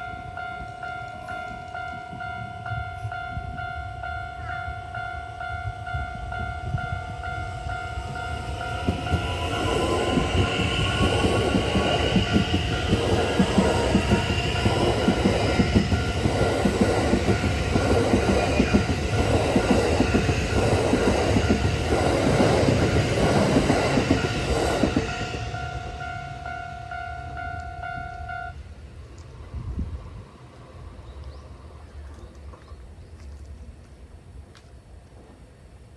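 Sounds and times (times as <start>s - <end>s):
level crossing alarm ringing: 4.8s - 28.6s
train wheels clattering over rail joints: 8.0s - 25.7s.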